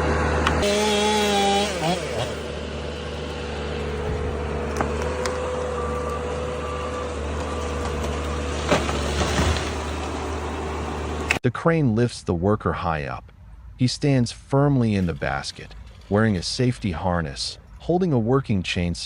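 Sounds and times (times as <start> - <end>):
heavy machinery engine whining: 0.0 - 11.4.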